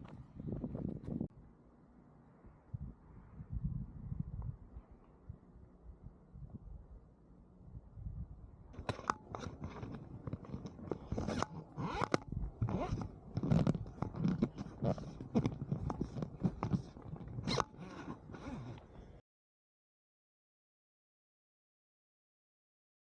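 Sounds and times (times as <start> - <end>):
crunching and scraping: 8.8 - 19.1.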